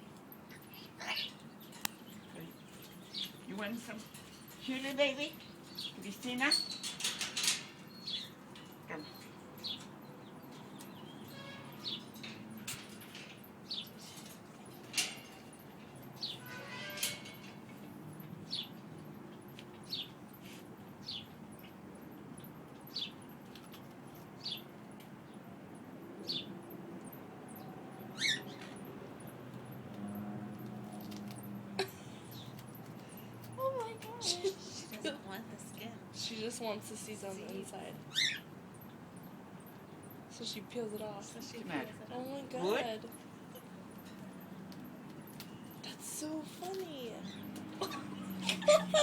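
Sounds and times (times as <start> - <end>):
bird chirping: 0.4 - 7.1, 7.8 - 29.5, 30.6 - 49.0.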